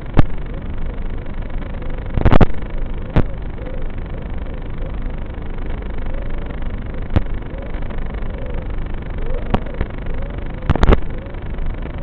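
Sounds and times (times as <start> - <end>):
motor whine: 0.0 - 12.0.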